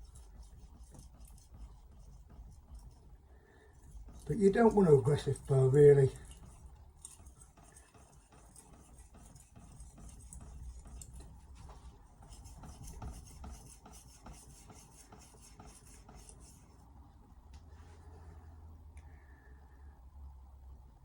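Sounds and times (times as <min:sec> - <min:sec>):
knife scraping on whetstone: 0:00.0 - 0:03.2, 0:03.8 - 0:16.6.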